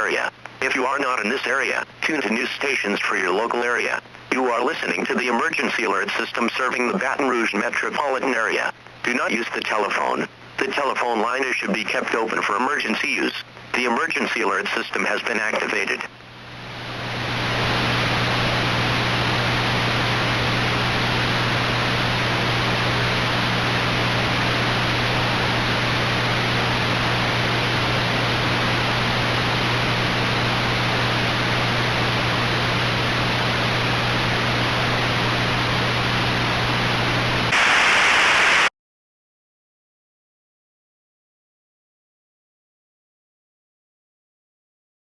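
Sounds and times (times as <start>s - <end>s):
television static hiss: 0.0s - 38.7s.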